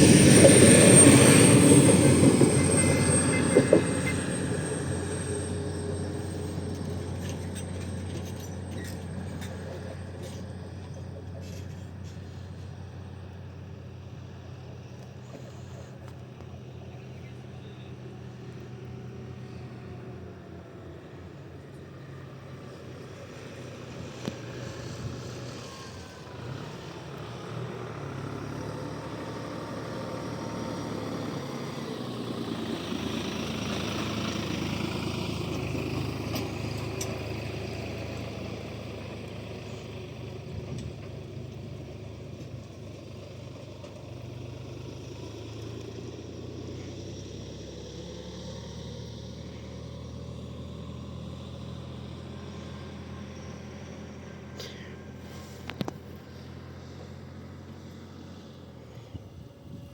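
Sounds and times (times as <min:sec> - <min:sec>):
train rolling noise: 0:00.0 - 0:13.2
train engine hum: 0:00.0 - 0:28.3, 0:52.4 - 0:59.9.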